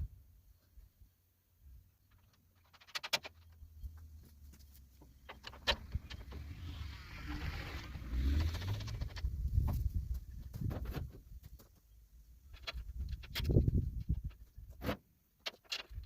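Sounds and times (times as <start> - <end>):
metal parts clicking and knocking: 2.0 - 3.9, 15.4 - 16.0.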